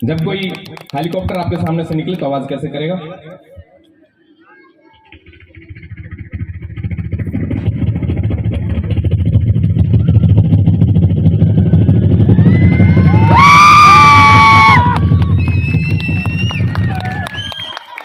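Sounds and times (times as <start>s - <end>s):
high whine: 5.2s - 17.5s.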